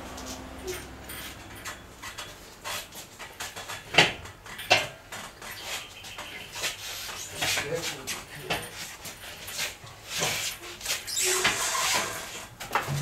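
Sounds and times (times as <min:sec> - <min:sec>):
metal knocking and clanking: 0:03.3 - 0:05.5.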